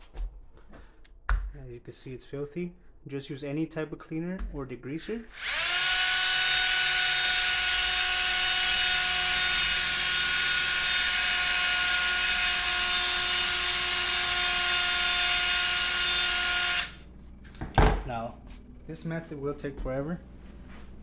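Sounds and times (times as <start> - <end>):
power drill motor whine: 5.3 - 17.0.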